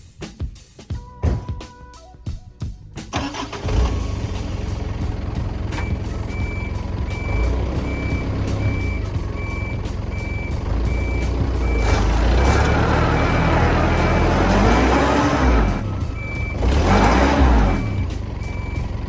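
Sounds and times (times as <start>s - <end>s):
vehicle engine running: 3.1s - 19.0s
backup warning beeper: 5.8s - 19.0s.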